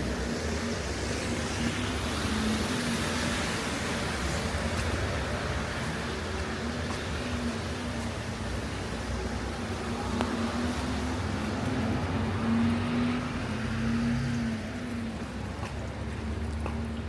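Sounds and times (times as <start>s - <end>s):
rain and traffic hiss: 0.0s - 17.0s.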